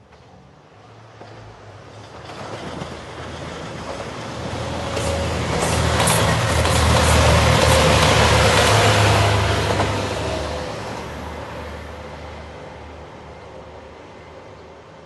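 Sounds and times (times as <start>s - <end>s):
wheels on rail noise: 0.0s - 11.9s
diesel train engine hum: 0.0s - 15.0s.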